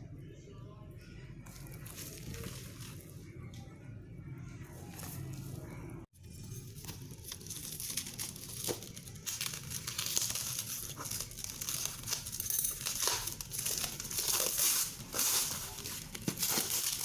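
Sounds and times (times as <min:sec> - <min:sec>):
plastic packaging crinkling and tearing: 0:01.5 - 0:03.1, 0:06.4 - 0:17.0.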